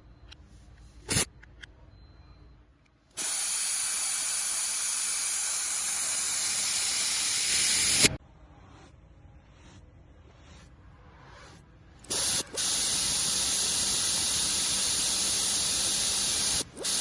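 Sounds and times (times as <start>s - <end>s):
gas hissing from a nozzle: 3.2s - 8.2s, 12.1s - 17.0s.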